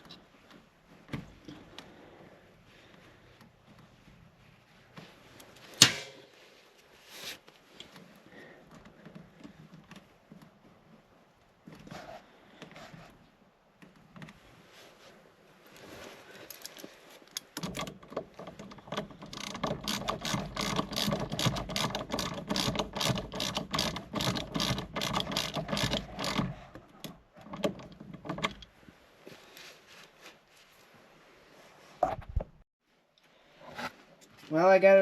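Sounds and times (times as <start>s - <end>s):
rapid ratcheting clicks: 17.5s - 28.6s.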